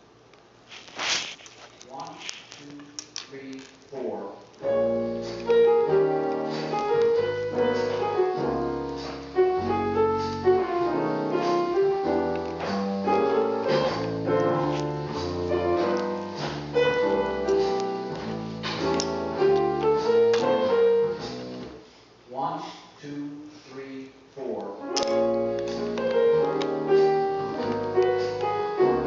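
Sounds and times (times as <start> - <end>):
piano music: 4.6 - 21.8, 24.8 - 29.0.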